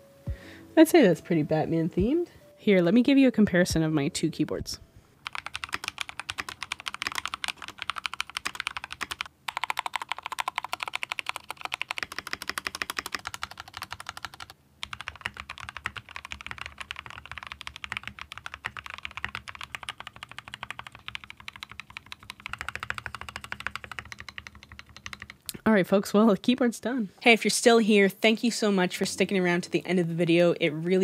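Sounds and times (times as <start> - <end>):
fast mechanical keyboard typing: 5.2 - 25.6.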